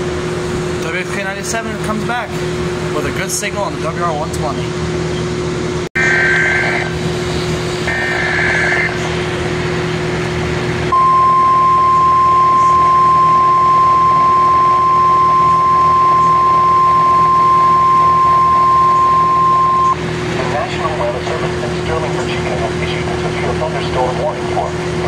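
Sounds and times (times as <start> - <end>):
steady warning alarm tone: 6.0 - 7.1, 7.8 - 9.0, 10.9 - 20.0.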